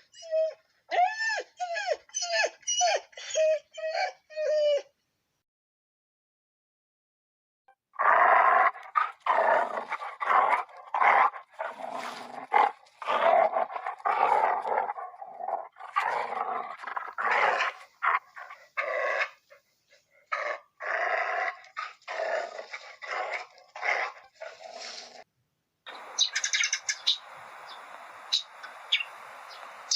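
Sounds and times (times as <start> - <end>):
dog growling: 8.0 - 19.4.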